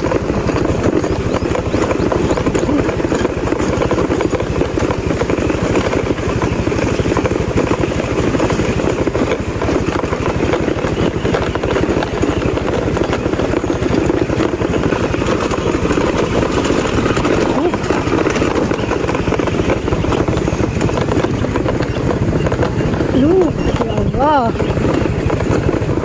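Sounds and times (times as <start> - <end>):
motorcycle engine running: 0.0 - 26.0.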